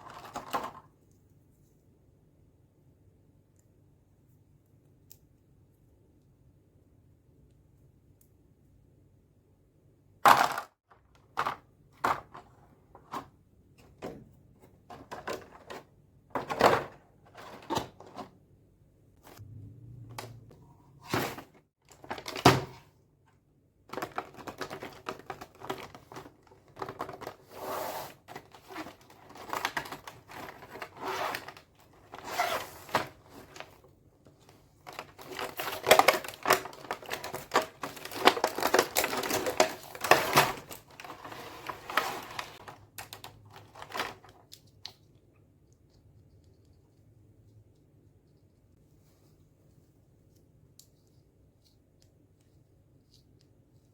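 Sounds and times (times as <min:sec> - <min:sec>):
plastic rustling and clattering: 0:00.0 - 0:00.9, 0:10.3 - 0:18.4, 0:21.0 - 0:22.9, 0:23.9 - 0:44.5.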